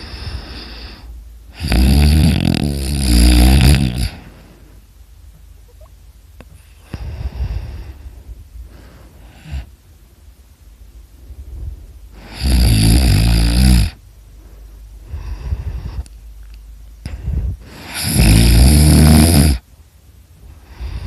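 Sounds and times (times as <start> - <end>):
person snoring: 0.0 - 4.5, 12.2 - 14.0, 17.0 - 19.6.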